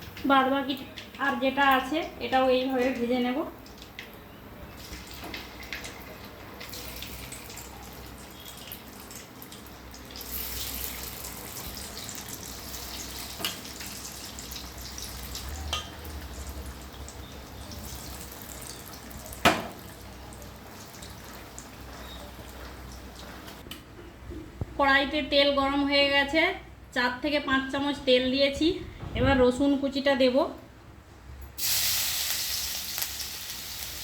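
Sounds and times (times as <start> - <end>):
chicken sizzling in hot oil: 6.6 - 19.7, 31.6 - 34.0.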